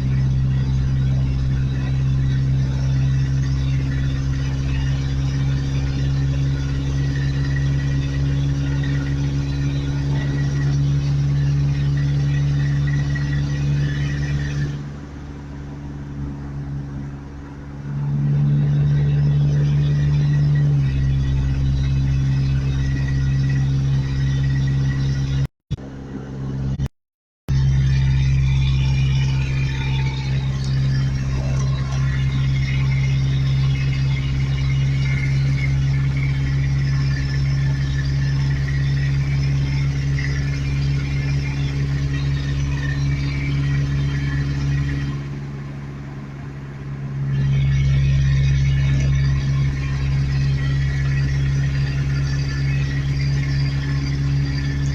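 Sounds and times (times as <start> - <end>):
road noise: 0.0 - 26.9, 27.5 - 54.9
truck engine drone from cab: 0.0 - 54.9.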